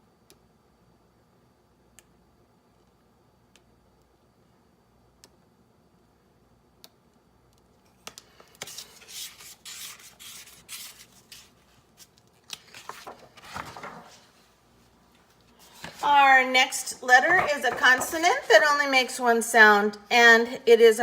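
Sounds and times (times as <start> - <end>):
objects rubbing and scraping: 17.0 - 18.6.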